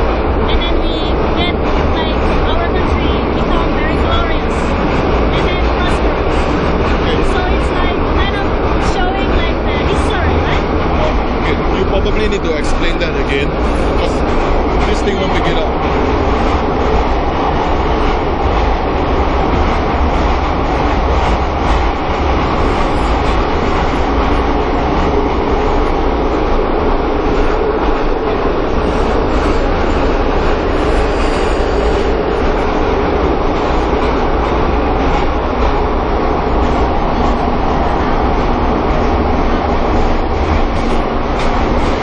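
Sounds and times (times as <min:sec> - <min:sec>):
train rumbling in tunnel: 0:00.0 - 0:42.0
speech: 0:00.4 - 0:04.7, 0:05.3 - 0:06.4, 0:07.0 - 0:15.8.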